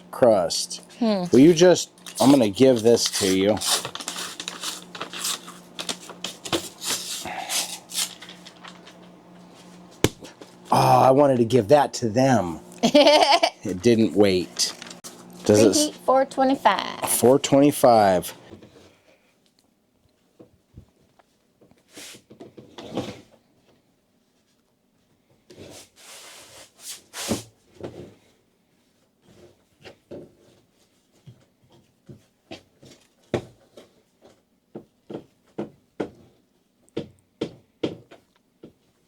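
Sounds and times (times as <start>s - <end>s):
rustling and scraping: 2.0s - 10.6s.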